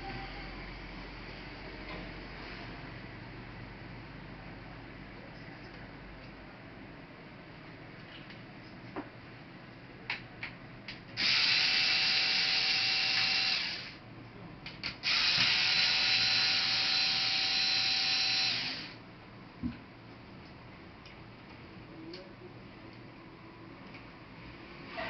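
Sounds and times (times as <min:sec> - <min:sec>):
electric screwdriver running: 0:11.2 - 0:14.0, 0:15.0 - 0:19.0.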